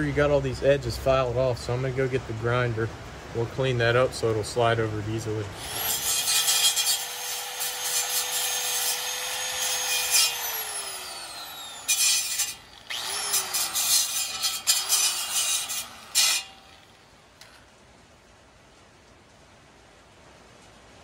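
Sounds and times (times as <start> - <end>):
grinder grinding steel pipe: 5.6 - 17.6.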